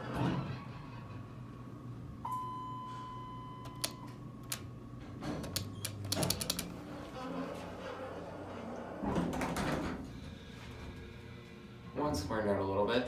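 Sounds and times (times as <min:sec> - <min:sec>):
sharp elevator clicks: 0:03.7 - 0:04.7, 0:05.4 - 0:06.8.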